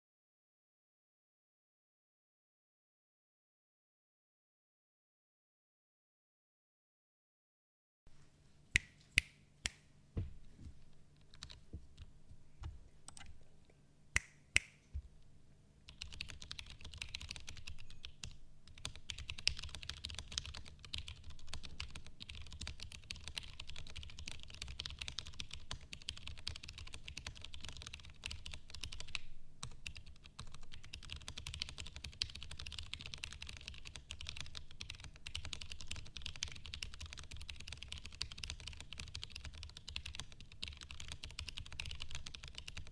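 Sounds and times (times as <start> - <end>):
typing on mechanical keyboard: 11.3 - 11.6, 15.9 - 42.9.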